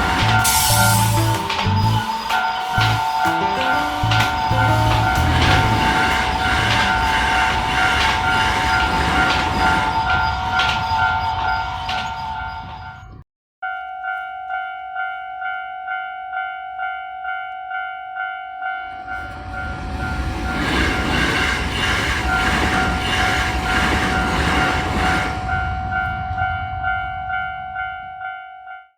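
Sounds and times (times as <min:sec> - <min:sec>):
train passing: 0:00.0 - 0:13.2, 0:18.6 - 0:28.3
railroad crossing bell ringing: 0:00.0 - 0:21.3, 0:22.2 - 0:28.9.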